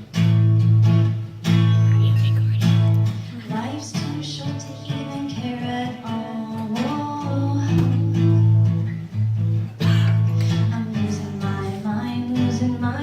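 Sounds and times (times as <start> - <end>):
acoustic guitar strumming: 0.0 - 13.0
person singing: 1.8 - 8.5, 10.3 - 13.0.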